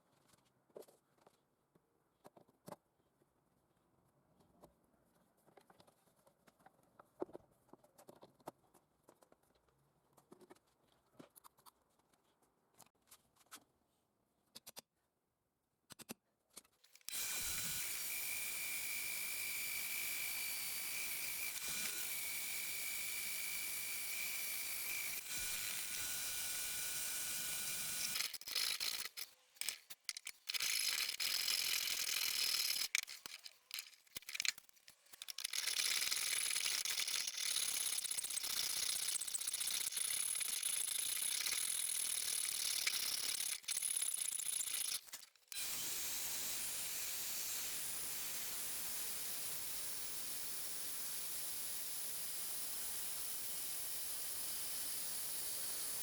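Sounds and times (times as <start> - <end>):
belt grinder whining: 17.0 - 56.0.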